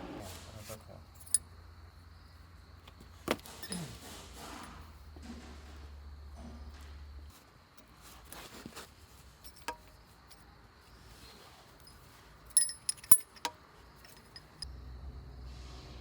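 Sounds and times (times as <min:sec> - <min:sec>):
metal parts clinking: 0:01.1 - 0:01.4, 0:03.3 - 0:04.0, 0:09.4 - 0:10.4, 0:11.8 - 0:14.7.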